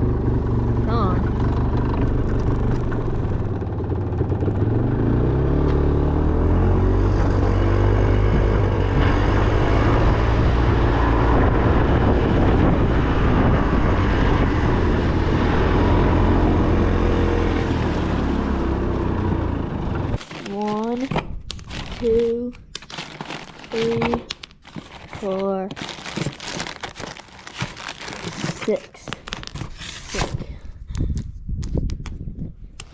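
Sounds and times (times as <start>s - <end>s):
vehicle engine running: 0.0s - 21.0s.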